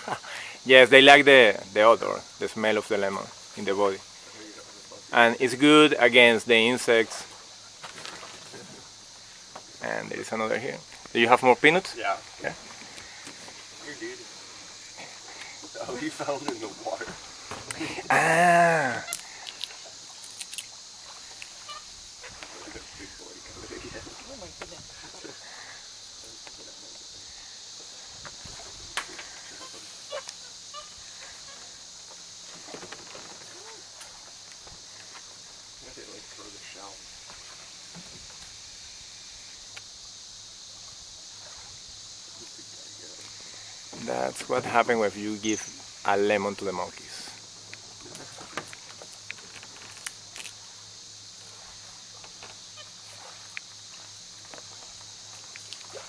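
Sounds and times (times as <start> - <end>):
high buzz of insects: 0.0 - 56.0
short chirping animal calls: 21.6 - 22.4, 29.6 - 31.6.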